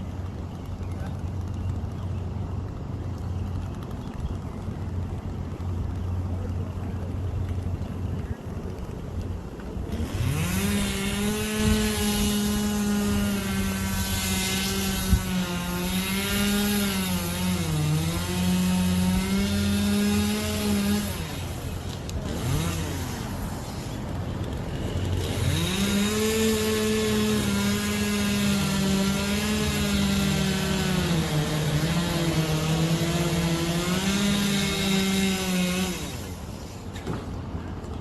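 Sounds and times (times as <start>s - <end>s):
chainsaw revving: 9.9s - 36.8s.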